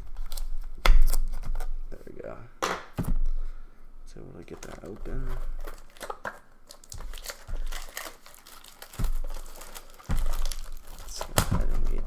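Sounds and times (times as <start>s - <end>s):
plastic wrap crinkling and tearing: 0.0s - 1.8s, 4.4s - 12.0s
dull thumps of box: 2.6s - 3.5s, 8.9s - 12.0s.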